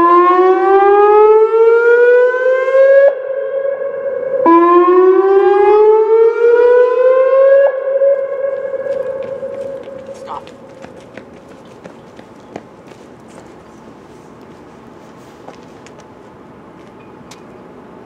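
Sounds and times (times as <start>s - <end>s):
electronic siren whooping: 0.0s - 10.0s.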